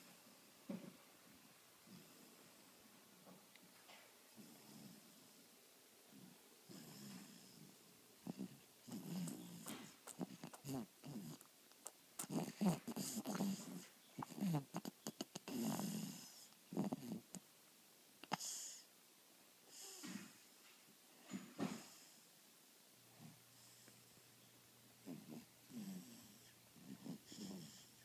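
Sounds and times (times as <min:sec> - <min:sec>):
person snoring with moans: 0:12.2 - 0:17.4, 0:25.0 - 0:28.0
faint breathing: 0:23.2 - 0:28.0.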